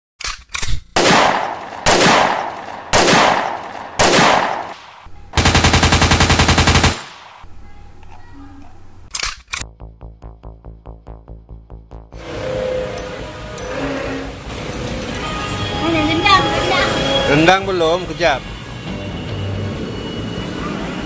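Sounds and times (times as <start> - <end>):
loud gunshots with echo: 1.0 - 7.5
machine-gun rattle: 5.4 - 7.1, 9.1 - 9.6
music with steady pulse: 9.6 - 21.0.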